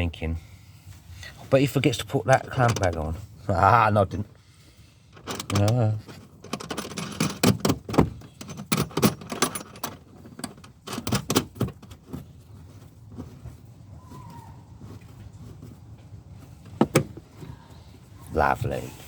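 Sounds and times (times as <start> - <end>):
metal parts and tools clinking: 2.3 - 3.1, 5.2 - 12.2.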